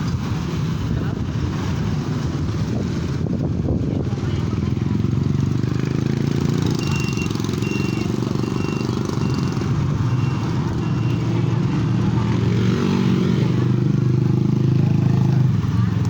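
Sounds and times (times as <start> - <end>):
short high beeps: 6.6 - 11.7.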